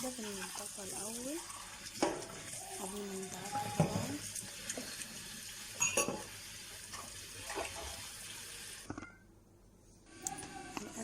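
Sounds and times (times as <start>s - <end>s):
tap running into sink: 3.4s - 5.0s
drinking glasses clinking: 5.8s - 6.2s.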